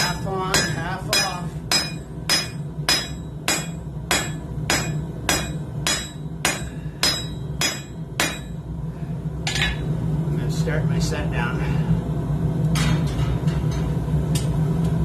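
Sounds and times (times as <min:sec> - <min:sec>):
hammer striking steel on anvil: 0:00.0 - 0:08.6, 0:09.5 - 0:09.9.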